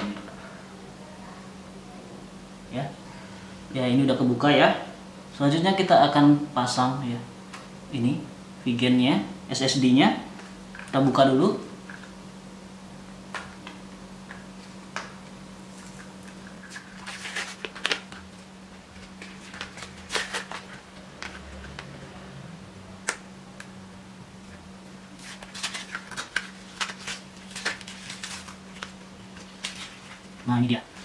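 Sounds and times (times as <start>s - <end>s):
steady low hum: 0.0s - 31.0s
packaging being opened: 15.8s - 21.9s, 25.2s - 31.0s.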